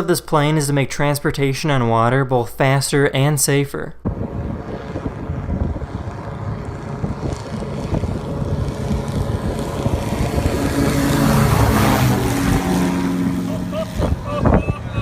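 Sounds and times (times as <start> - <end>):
engine and propeller passing by: 4.1 - 15.0.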